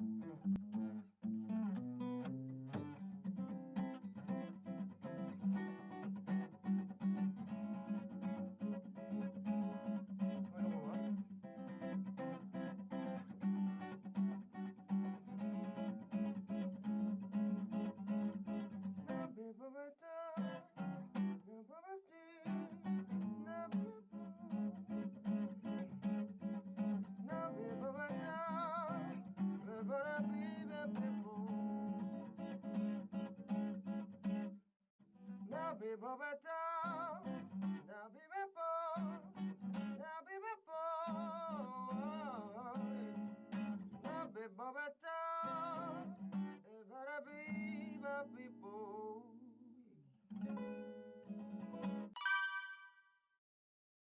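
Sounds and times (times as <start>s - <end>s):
man singing: 10.4s - 11.1s, 19.2s - 20.6s, 21.4s - 22.7s, 23.3s - 24.7s, 27.2s - 31.6s, 35.5s - 39.2s, 40.0s - 43.0s, 44.0s - 49.9s.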